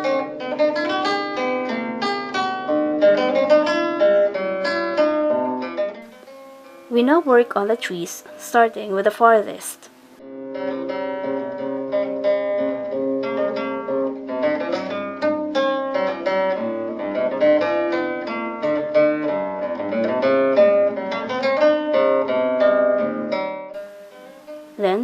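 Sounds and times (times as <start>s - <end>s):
plucked string instrument music: 0.0s - 9.4s, 10.2s - 25.0s.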